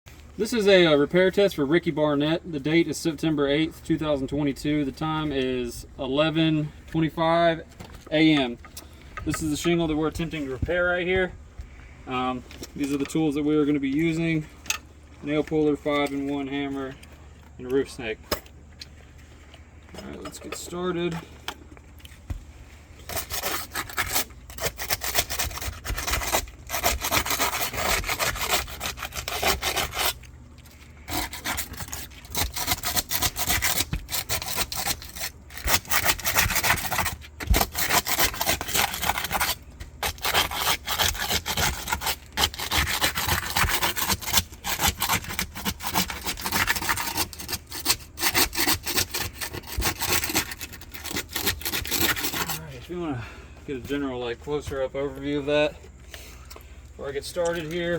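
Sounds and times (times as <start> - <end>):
scraping on asphalt shingles: 18.6 - 57.9.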